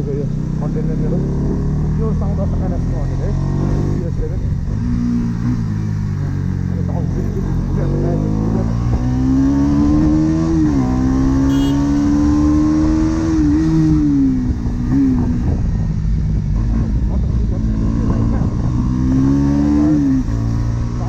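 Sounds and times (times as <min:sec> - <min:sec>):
motorcycle engine exhaust: 0:11.5 - 0:12.0.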